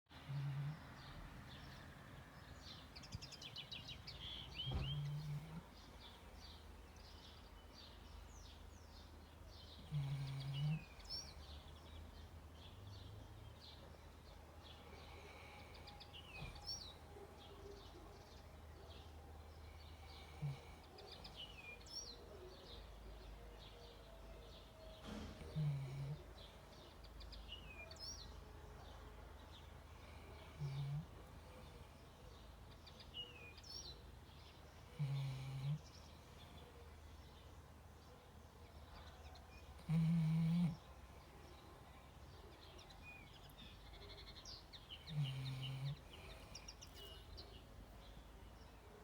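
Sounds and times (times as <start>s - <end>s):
birds chirping: 0.1s - 49.0s
dog snoring: 0.2s - 1.5s, 4.6s - 5.8s, 9.7s - 11.4s, 19.9s - 21.4s, 25.0s - 26.5s, 29.9s - 31.7s, 34.8s - 36.3s, 39.5s - 41.1s, 45.0s - 46.7s.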